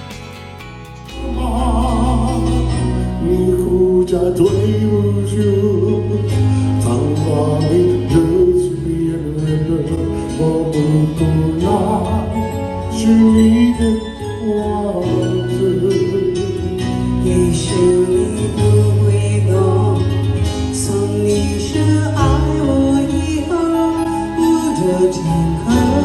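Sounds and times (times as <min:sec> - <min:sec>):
vocal group singing with instruments: 0:00.0 - 0:06.1, 0:17.3 - 0:26.0.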